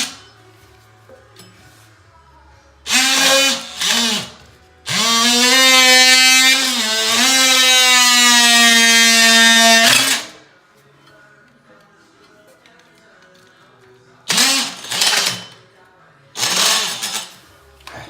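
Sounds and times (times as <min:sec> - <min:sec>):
oscillating multi-tool cutting plastic: 0:04.9 - 0:10.3.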